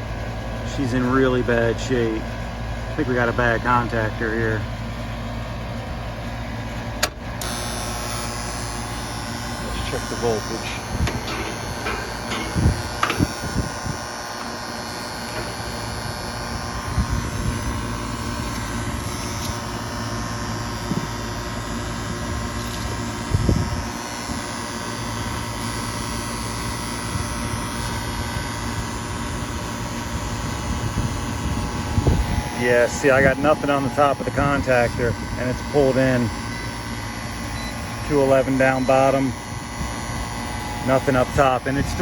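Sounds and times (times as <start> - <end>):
air conditioner electrical buzz and hum: 0.0 - 42.0
knocks of tools: 11.0 - 13.3.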